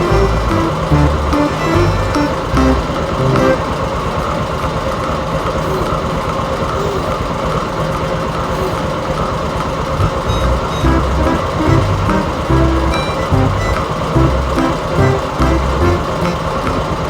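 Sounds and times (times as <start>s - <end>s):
heavy diesel engine rumbling: 0.0s - 4.6s, 8.4s - 17.0s.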